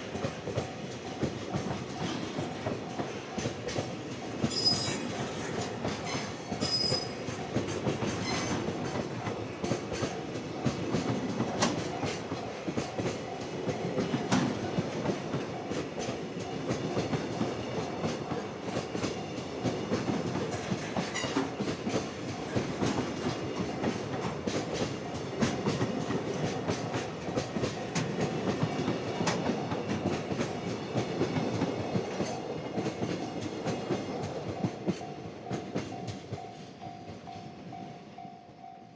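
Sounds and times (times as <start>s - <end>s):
high wheel squeal: 4.5s - 5.2s, 6.1s - 7.2s.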